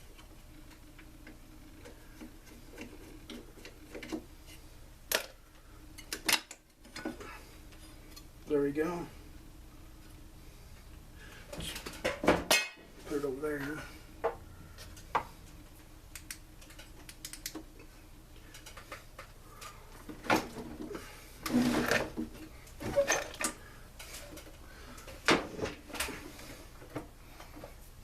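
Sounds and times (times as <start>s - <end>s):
clinks of hand tools and metal parts: 22.9s - 24.5s.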